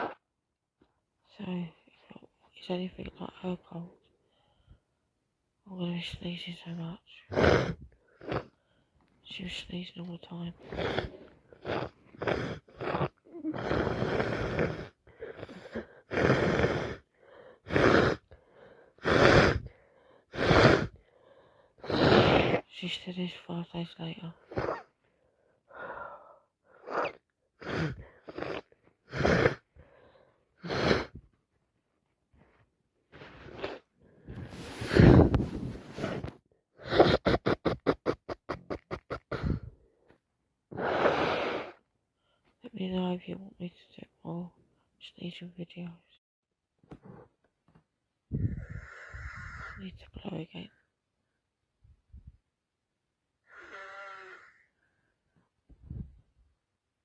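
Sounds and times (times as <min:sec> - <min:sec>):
person sniffing and snorting: 0:00.0 - 0:00.2, 0:07.3 - 0:08.7, 0:10.6 - 0:21.0, 0:21.8 - 0:22.7, 0:24.5 - 0:25.0, 0:26.7 - 0:31.3, 0:33.1 - 0:39.8, 0:40.7 - 0:41.9
breath in: 0:10.6 - 0:22.6, 0:24.5 - 0:31.2, 0:33.1 - 0:37.3, 0:39.3 - 0:42.4, 0:48.3 - 0:49.7
woman blowing her nose: 0:10.7 - 0:17.0, 0:17.6 - 0:18.2, 0:19.0 - 0:19.7, 0:20.3 - 0:21.0, 0:21.8 - 0:22.6, 0:26.8 - 0:29.7, 0:30.6 - 0:31.2, 0:33.1 - 0:39.7, 0:40.7 - 0:41.8.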